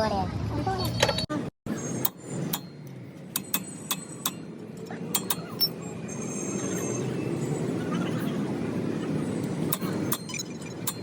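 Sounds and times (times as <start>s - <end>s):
sharp metallic clicks: 1.0s - 6.9s, 9.4s - 11.0s.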